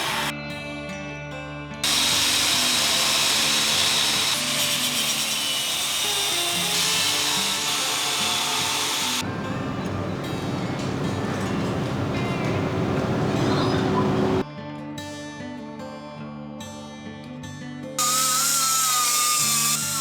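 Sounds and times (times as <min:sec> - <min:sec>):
power tool grinding metal: 0:00.0 - 0:00.3, 0:01.8 - 0:14.4, 0:18.0 - 0:20.0
background music: 0:05.9 - 0:16.8.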